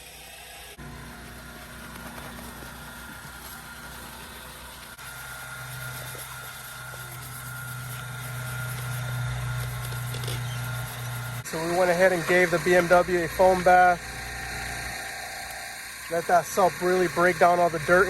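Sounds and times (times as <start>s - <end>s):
pressure washer humming: 0.0s - 18.0s.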